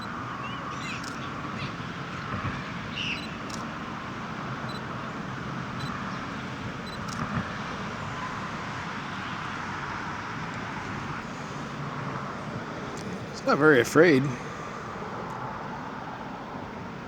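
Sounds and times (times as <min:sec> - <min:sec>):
distant road traffic: 0:00.0 - 0:17.0
sharp clicks: 0:01.0 - 0:01.3, 0:03.4 - 0:03.7.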